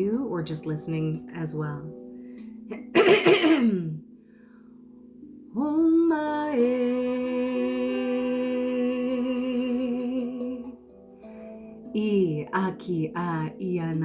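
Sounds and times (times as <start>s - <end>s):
woman singing long note: 5.6s - 10.8s.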